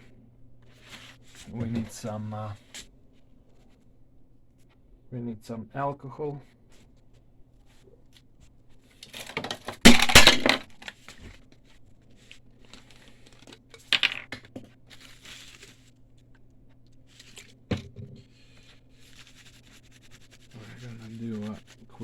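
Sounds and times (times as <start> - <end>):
workbench handling noises: 9.0 - 11.4.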